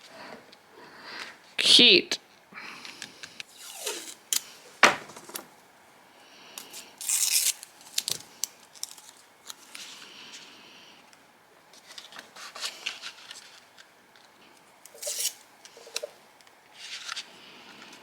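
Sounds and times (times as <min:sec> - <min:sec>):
paper ripping: 0:03.5 - 0:04.3, 0:07.0 - 0:09.2, 0:15.0 - 0:15.4.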